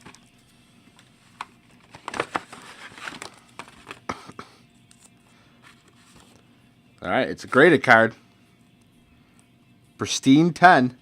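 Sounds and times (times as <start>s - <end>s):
packaging crinkling and tearing: 1.3s - 4.2s.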